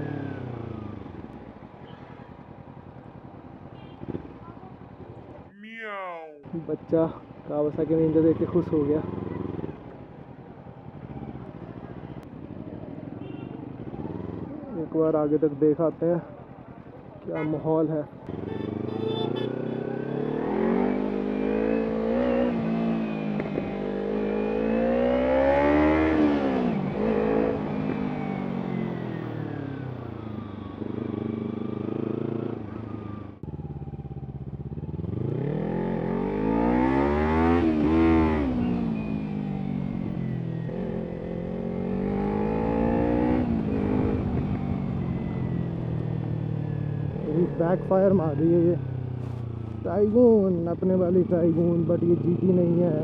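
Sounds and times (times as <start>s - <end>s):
motorcycle engine revving: 8.1s - 10.0s, 13.2s - 14.8s, 18.2s - 53.0s.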